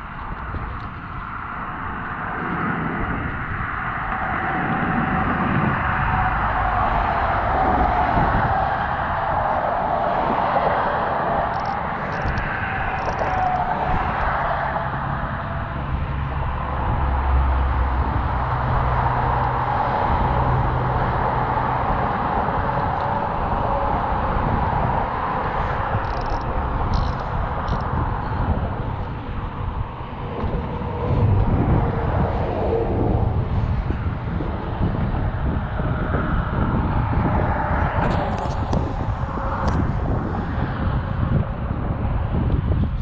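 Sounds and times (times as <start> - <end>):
deep rumble: 0.0 - 43.0
vehicles passing: 0.0 - 43.0
faint high ticks: 26.0 - 27.9.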